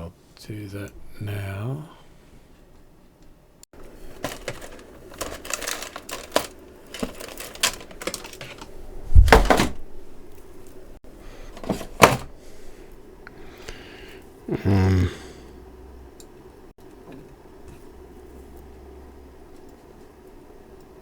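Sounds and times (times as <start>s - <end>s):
loud thud: 9.1s - 9.9s.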